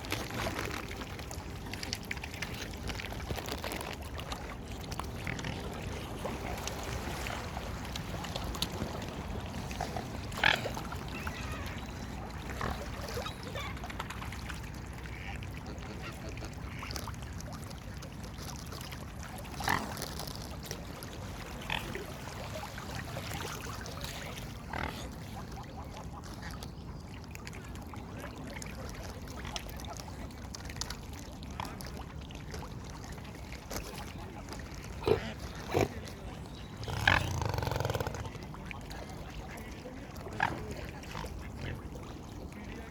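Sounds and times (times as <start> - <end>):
waterfowl honks and quacks: 15.0 - 17.2, 35.0 - 36.0.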